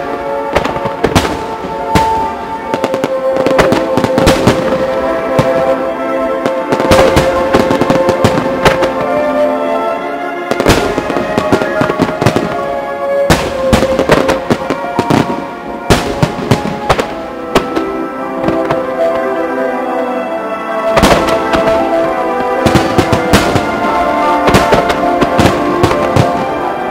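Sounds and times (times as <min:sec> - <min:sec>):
fireworks bangs and crackles: 0:00.0 - 0:26.9
music playing: 0:00.0 - 0:26.9
big firework booms: 0:00.5 - 0:05.8, 0:10.5 - 0:12.6, 0:13.2 - 0:18.8, 0:21.0 - 0:26.7.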